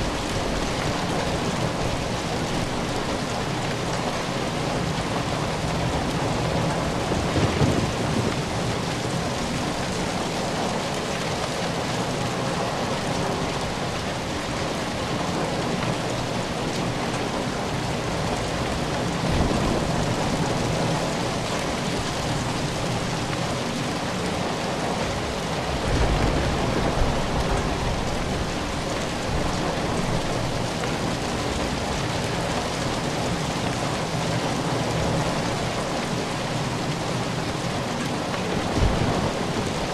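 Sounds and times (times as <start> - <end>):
rain pattering: 0.0 - 39.9
thunder rumbling: 5.6 - 9.9, 19.2 - 23.2, 25.2 - 30.7, 38.6 - 39.9.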